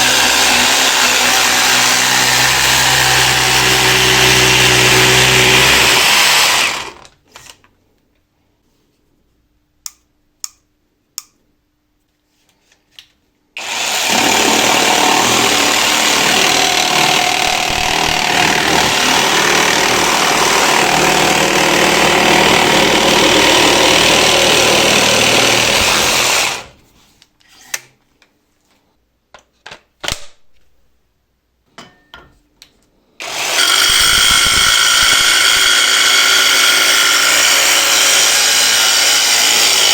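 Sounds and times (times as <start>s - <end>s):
jigsaw cutting: 0.0s - 7.1s, 13.6s - 26.8s, 33.2s - 39.9s.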